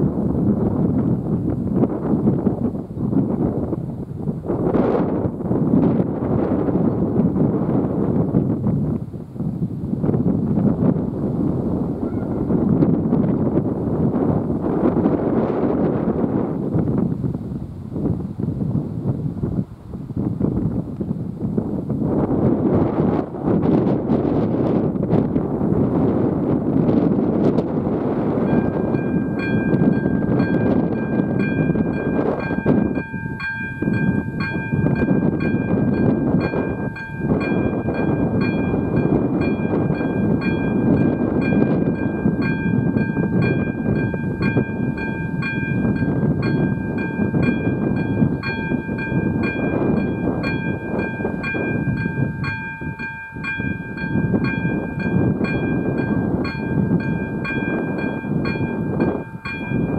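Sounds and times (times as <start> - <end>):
train rumbling: 27.6 - 59.9
level crossing warning bell: 28.2 - 59.9.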